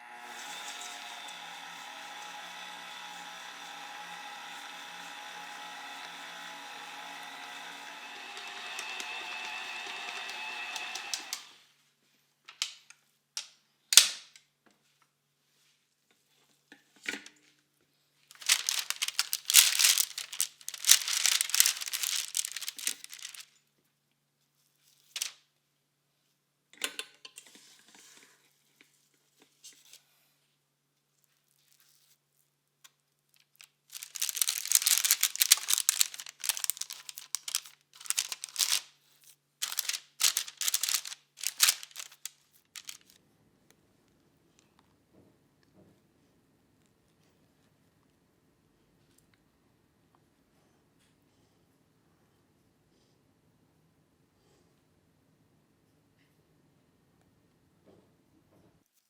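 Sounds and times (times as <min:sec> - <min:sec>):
crinkling and rustling: 0:18.3 - 0:23.6, 0:24.7 - 0:25.4, 0:33.3 - 0:43.2.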